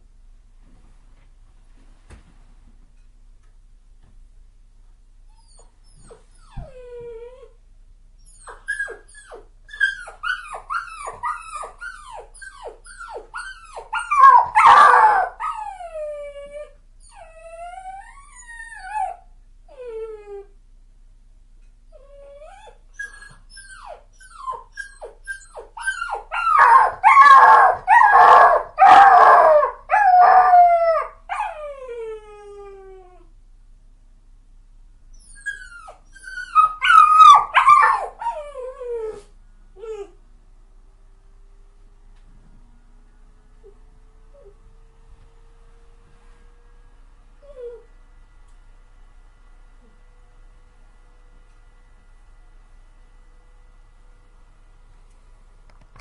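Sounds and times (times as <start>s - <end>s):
puppy whimpering and yelping: 5.3s - 7.6s, 8.2s - 20.5s, 22.0s - 33.3s, 35.1s - 40.2s.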